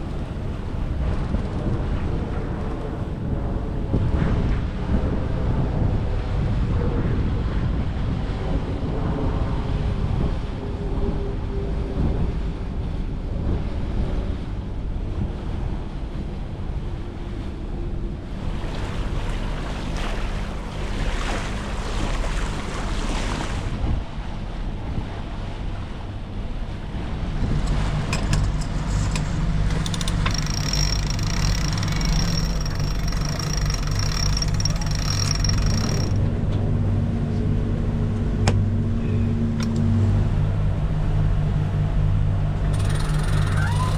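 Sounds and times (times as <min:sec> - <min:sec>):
engine hum: 0:00.0 - 0:04.0, 0:25.0 - 0:43.9
water rushing along hull: 0:00.0 - 0:43.9
thin high whine: 0:28.1 - 0:36.3, 0:42.6 - 0:43.9.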